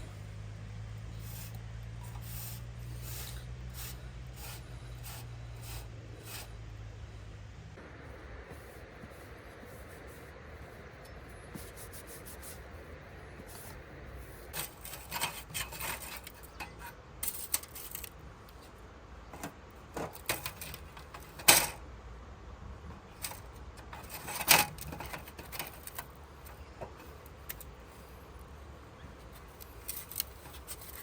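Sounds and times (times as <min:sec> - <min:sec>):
objects being handled: 0:14.4 - 0:21.8, 0:22.9 - 0:27.9, 0:29.1 - 0:31.0.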